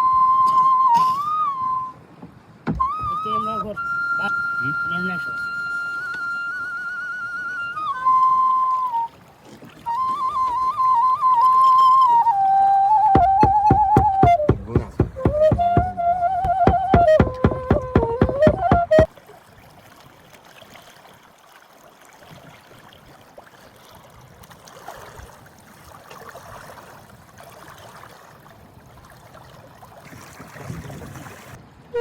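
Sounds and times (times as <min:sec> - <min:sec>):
flute music over a beat: 0:00.0 - 0:02.0, 0:02.7 - 0:09.1, 0:09.8 - 0:19.1
boat: 0:00.0 - 0:32.0
water: 0:00.0 - 0:32.0.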